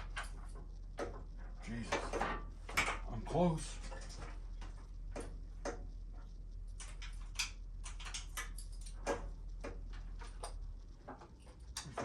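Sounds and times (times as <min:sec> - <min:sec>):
low electrical hum: 0:00.0 - 0:12.0
tools and metal parts clicking: 0:06.8 - 0:10.7.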